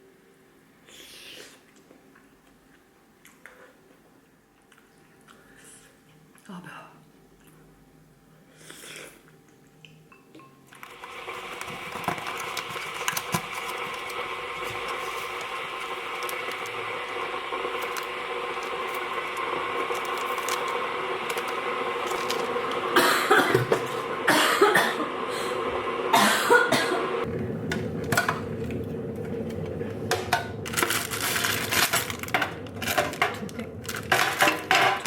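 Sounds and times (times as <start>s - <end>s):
steady background hum: 0.0s - 35.0s
person coughing: 23.0s - 25.2s, 26.1s - 27.2s.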